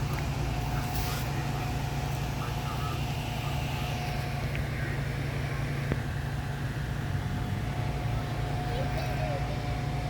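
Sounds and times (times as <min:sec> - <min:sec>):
diesel engine idling: 0:00.0 - 0:10.0.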